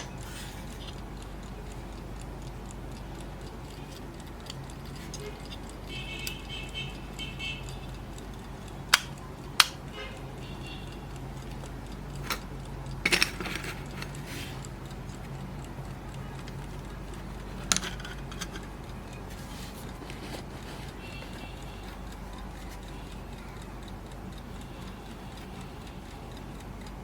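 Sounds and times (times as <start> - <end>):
alarm clock ticking: 0.0 - 27.0
metallic clicks and knocks: 12.2 - 14.3, 16.4 - 19.4.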